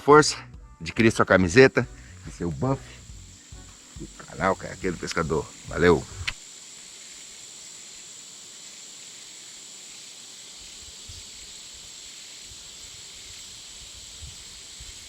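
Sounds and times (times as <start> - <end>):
even hiss: 0.0 - 15.0
insects droning: 0.0 - 15.0
soft low bumps: 1.8 - 6.4.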